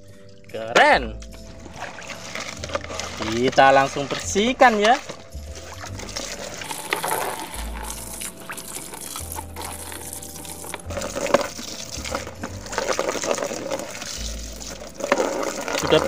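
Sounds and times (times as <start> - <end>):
water splashing over plastic toys: 0.0 - 16.0.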